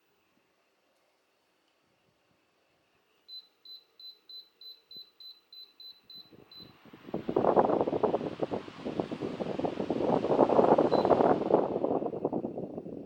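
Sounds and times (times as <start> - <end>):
fan airflow buffeting microphone: 6.1 - 13.0.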